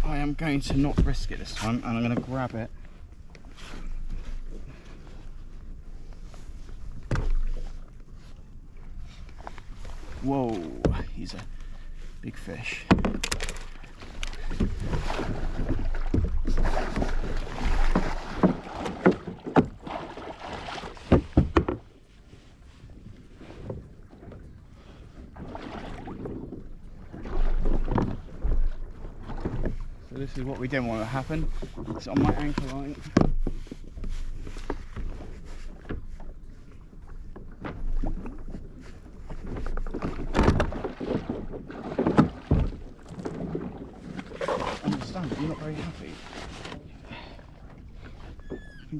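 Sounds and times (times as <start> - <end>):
water splashing and sloshing: 0.0 - 48.9
knocks and thuds against kayak: 0.2 - 2.7, 6.9 - 7.8, 10.7 - 11.2, 12.7 - 21.9, 25.4 - 29.8, 31.3 - 36.3, 37.0 - 47.0
knocks on kayak hull: 21.0 - 21.9.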